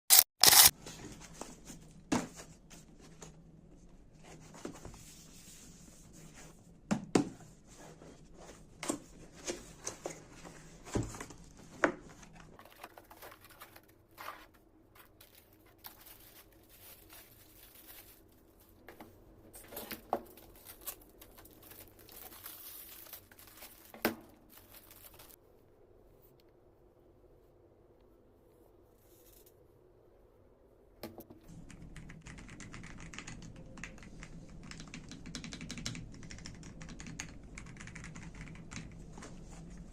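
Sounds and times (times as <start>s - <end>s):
packaging crinkling and tearing: 19.6s - 25.4s.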